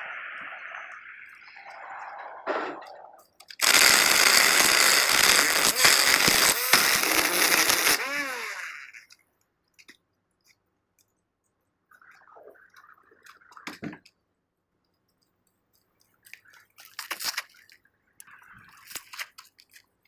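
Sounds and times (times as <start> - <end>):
string trimmer revving: 3.6 - 9.0.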